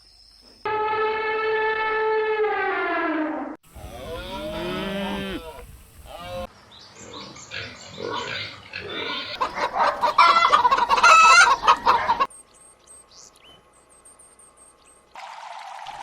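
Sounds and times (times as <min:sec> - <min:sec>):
chickens clucking: 0:07.5 - 0:12.3.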